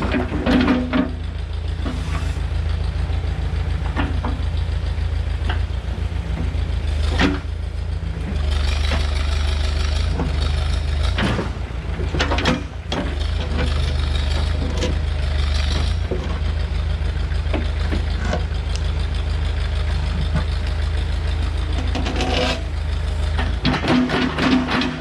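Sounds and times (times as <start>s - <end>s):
backhoe engine running: 0.0s - 25.0s
metallic clanks from digging gear: 21.8s - 22.7s.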